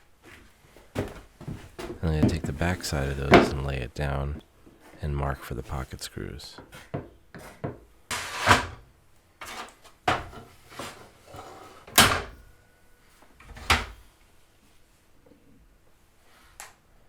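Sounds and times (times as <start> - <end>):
wooden boards knocking: 1.8 - 3.7
wood scraping: 1.8 - 4.3.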